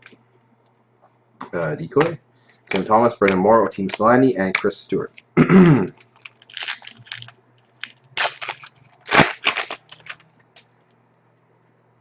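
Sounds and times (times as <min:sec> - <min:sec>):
foil wrapper crinkling and tearing: 0:05.8 - 0:10.3.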